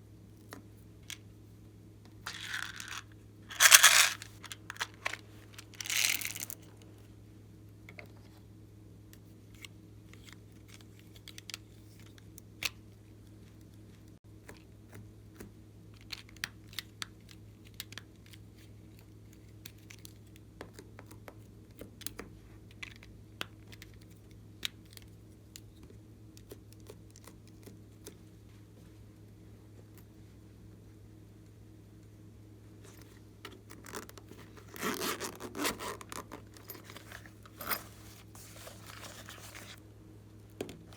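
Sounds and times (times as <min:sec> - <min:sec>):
steady low hum: 0:25.1 - 0:40.9.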